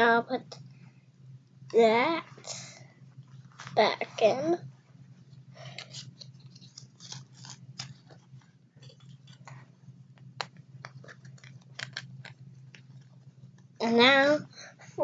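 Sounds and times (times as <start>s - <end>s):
steady low hum: 0.0s - 15.0s
rustling of doll clothes: 3.4s - 4.3s.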